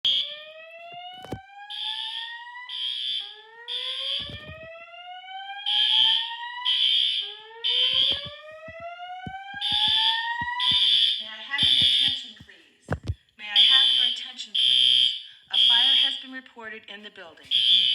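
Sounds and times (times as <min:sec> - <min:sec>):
fire alarm horn blasts: 0:00.0 - 0:12.4, 0:13.6 - 0:16.2, 0:17.5 - 0:17.9
sharp clicks: 0:07.8 - 0:13.2.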